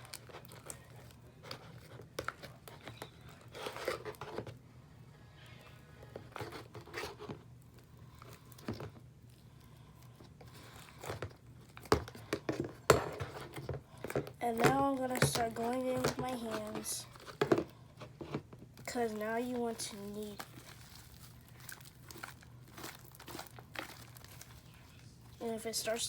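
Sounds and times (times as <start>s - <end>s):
crinkly scraping strokes: 0.0s - 8.7s, 18.0s - 26.0s
slime squishing: 18.8s - 26.0s.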